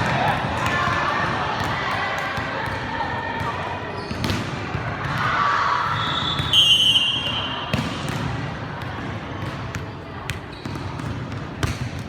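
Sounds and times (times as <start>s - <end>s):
murmur of spectators: 0.0s - 12.0s
volleyball thuds: 7.6s - 8.4s.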